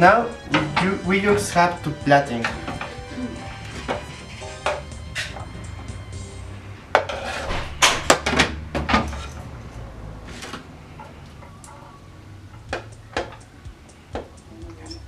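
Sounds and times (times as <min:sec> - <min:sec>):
utensils and dishes clattering: 0:00.0 - 0:06.2, 0:06.9 - 0:15.0.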